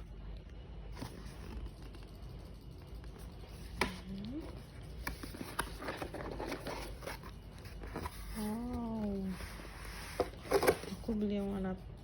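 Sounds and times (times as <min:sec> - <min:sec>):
box clicks and rustles: 0:04.5 - 0:11.2.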